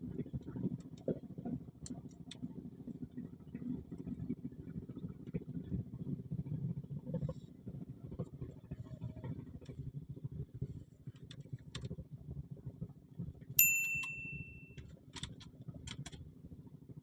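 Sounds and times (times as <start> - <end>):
small metal bell ding: 13.6 - 14.8.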